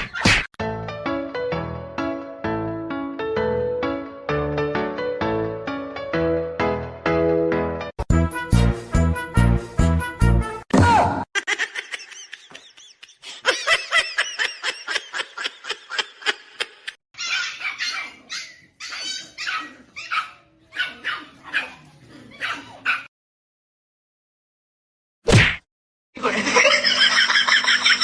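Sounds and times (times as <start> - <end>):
dog barking and yipping: 17.2 - 23.1.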